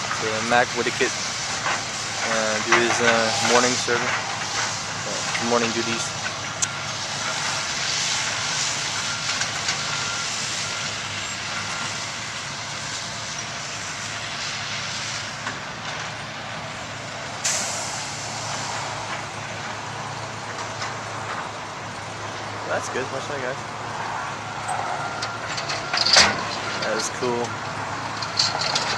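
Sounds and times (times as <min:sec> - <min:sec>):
heavy diesel machinery running: 0:00.0 - 0:28.9
sharp hiss of air: 0:03.2 - 0:05.4, 0:17.4 - 0:19.1.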